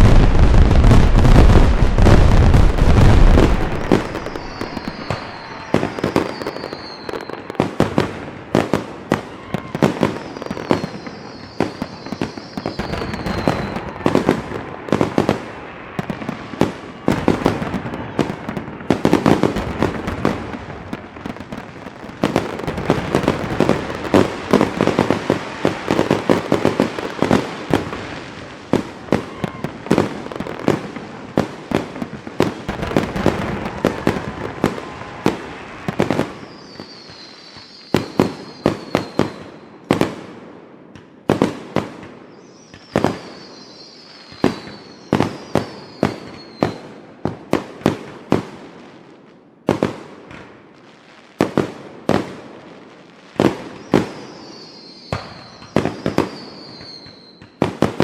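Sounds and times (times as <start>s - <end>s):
falling firework whistles: 0.0s - 30.8s, 32.0s - 40.0s, 42.2s - 47.0s, 53.4s - 58.0s
rumbling firework crackle: 0.0s - 40.4s
firework bangs: 0.0s - 48.8s, 53.3s - 58.0s.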